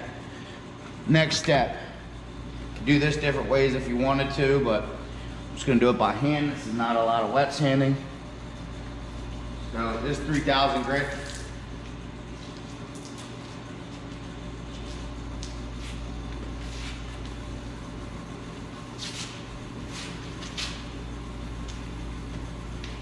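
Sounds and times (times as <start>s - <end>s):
low hum of the shop: 0.0s - 23.0s.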